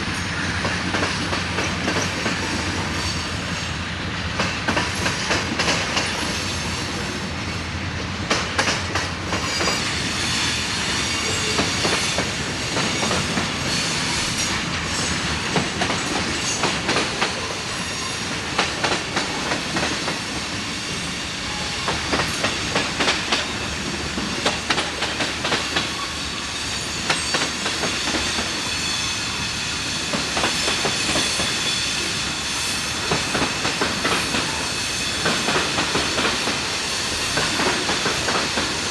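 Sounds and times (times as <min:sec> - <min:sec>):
freight train rolling past: 0:00.0 - 0:38.9
high wheel squeal: 0:09.4 - 0:14.6.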